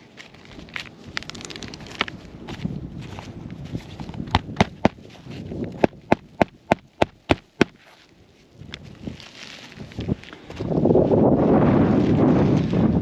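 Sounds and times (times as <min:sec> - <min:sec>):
hammer striking roofing nails: 0:04.3 - 0:05.0, 0:05.8 - 0:07.8.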